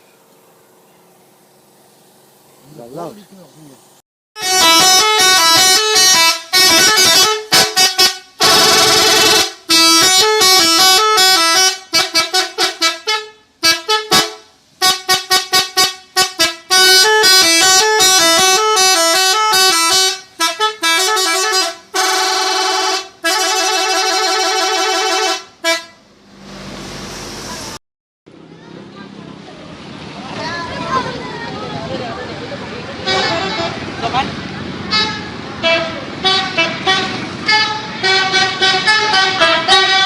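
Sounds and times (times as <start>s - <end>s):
multi-tone air horn tunes: 4.4s - 26.0s, 33.0s - 33.9s, 34.9s - 40.0s.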